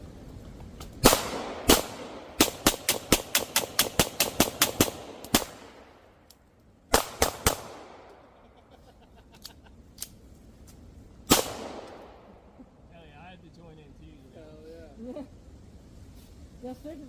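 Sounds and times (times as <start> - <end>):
gunshots: 1.0 - 5.9, 6.9 - 8.2, 11.3 - 12.2.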